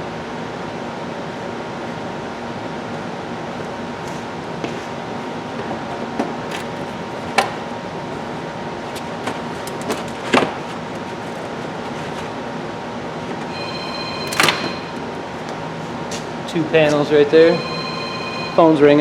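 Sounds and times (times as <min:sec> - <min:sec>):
whirring background hum: 0:00.0 - 0:19.0
plastic trim panels snapping: 0:06.5 - 0:07.6, 0:08.9 - 0:12.3
phone ringing: 0:13.4 - 0:15.1, 0:17.3 - 0:19.0.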